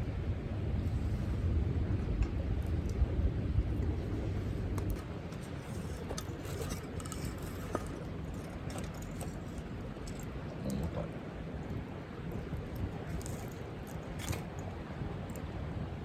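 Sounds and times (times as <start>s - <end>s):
campfire crackling and popping: 7.8s - 15.5s.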